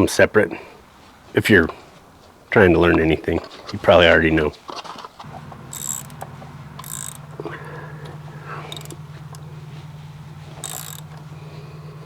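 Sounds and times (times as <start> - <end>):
car engine idling: 5.2 - 12.0.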